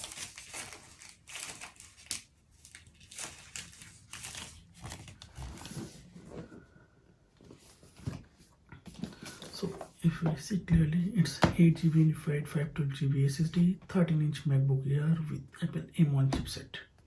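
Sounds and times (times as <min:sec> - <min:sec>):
wrapping tearing and crinkling: 0:00.0 - 0:06.1.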